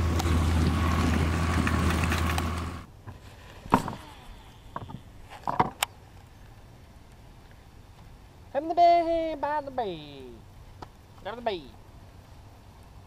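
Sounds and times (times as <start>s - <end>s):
boat motor humming: 0.0s - 2.9s.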